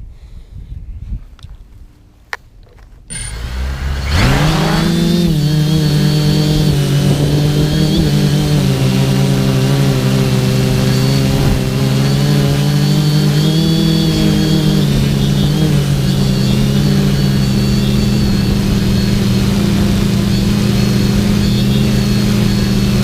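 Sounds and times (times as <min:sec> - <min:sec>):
drone motors whirring: 0:03.1 - 0:23.0.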